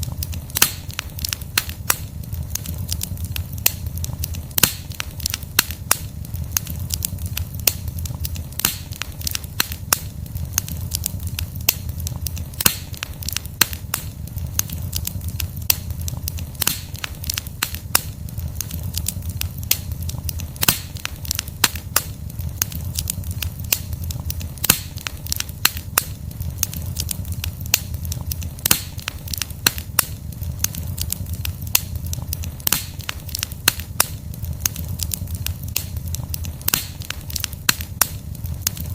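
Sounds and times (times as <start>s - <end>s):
burning wood crackling and popping: 0.0s - 38.9s
low rumble of flames: 0.0s - 38.9s.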